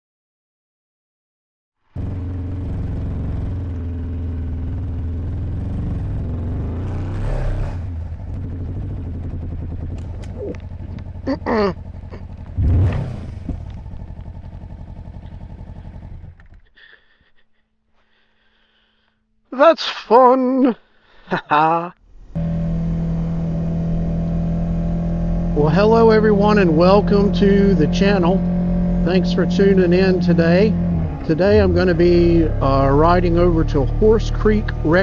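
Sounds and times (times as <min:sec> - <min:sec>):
motorcycle engine running: 0:01.9 - 0:16.8, 0:22.4 - 0:35.0.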